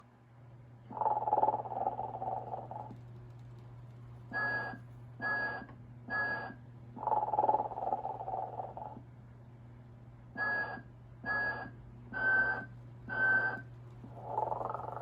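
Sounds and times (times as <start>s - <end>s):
steady low hum: 0.0s - 15.0s
toy rattly snore: 0.9s - 2.9s, 7.0s - 9.0s, 14.2s - 15.0s.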